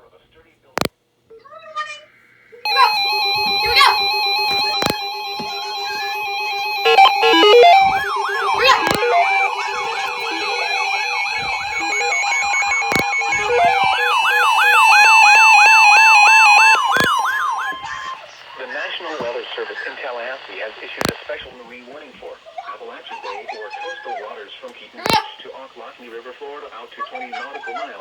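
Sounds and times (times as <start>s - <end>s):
electronic music: 2.7s - 17.8s
siren-like wail sweeping: 2.7s - 18.2s
steady alarm tone: 2.7s - 18.2s.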